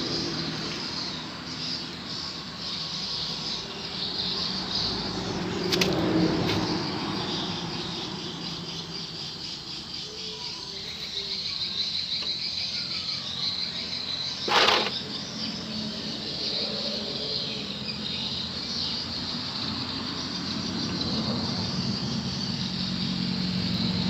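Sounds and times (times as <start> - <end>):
insects chirring: 0.0 - 24.0
loud scrape or clatter: 14.4 - 15.0.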